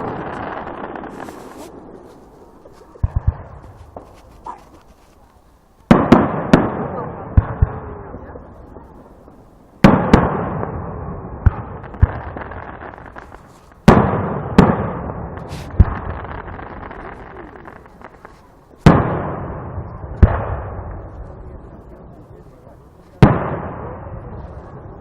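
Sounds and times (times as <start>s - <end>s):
fireworks big bangs with echo: 0.0s - 4.2s, 5.9s - 21.4s, 23.2s - 25.0s
fireworks pops and cracks: 0.0s - 7.8s, 11.4s - 19.5s.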